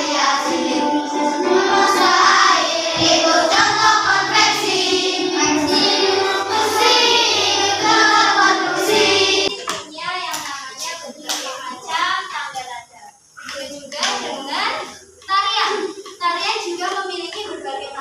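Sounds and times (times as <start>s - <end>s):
backing music: 0.0s - 9.6s
children singing: 0.0s - 9.7s
children chattering: 0.0s - 18.0s.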